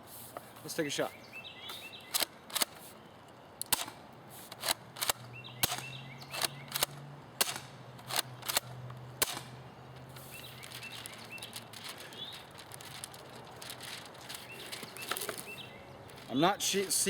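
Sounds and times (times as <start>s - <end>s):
airsoft shotgun racking and firing: 2.0s - 2.8s, 3.6s - 9.5s.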